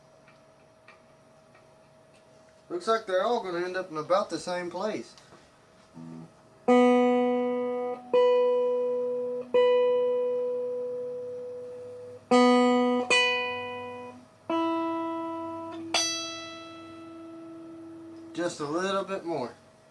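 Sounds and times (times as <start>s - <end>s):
electric guitar notes plucked: 6.0s - 18.8s.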